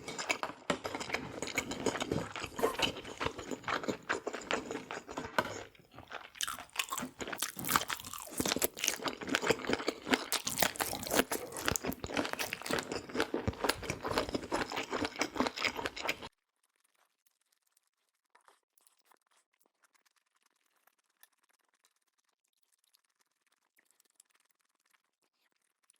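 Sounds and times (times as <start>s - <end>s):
person chewing crunchy food: 0.0s - 16.3s.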